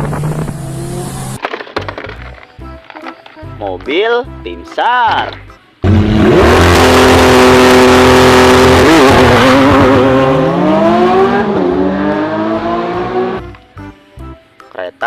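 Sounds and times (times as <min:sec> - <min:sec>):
car engine revving: 0:00.0 - 0:01.4, 0:05.8 - 0:13.4.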